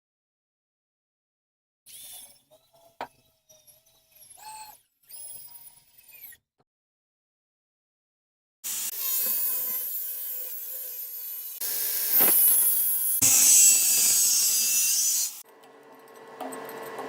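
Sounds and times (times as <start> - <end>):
tools cutting and scraping wood: 8.7 - 15.4.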